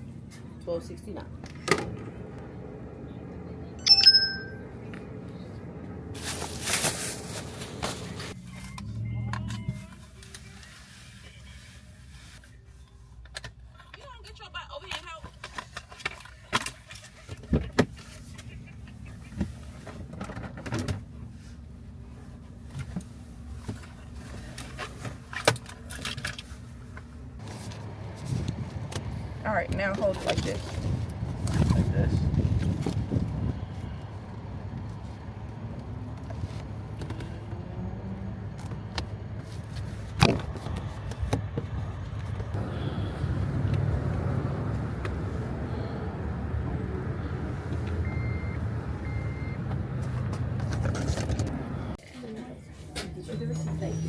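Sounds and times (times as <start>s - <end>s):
vehicle rumble: 0.0s - 52.0s, 52.6s - 54.0s
store background noise: 2.9s - 54.0s
metallic clink: 3.8s - 4.6s
bell-like ring: 3.8s - 4.8s.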